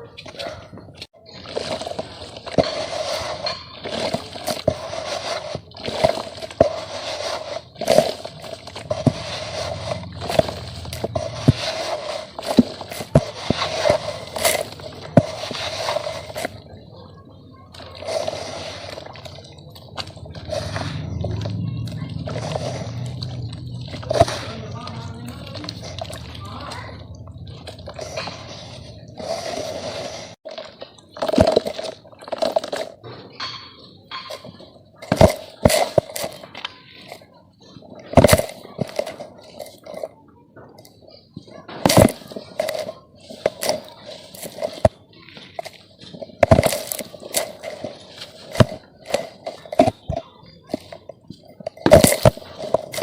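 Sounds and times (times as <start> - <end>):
dirt lumps crunching: 0.0 - 16.9, 17.7 - 53.0
wet squishing: 0.2 - 33.1
dirt crumbling: 1.3 - 16.8, 17.8 - 37.3
dirt lumps crumbling: 41.1 - 53.0.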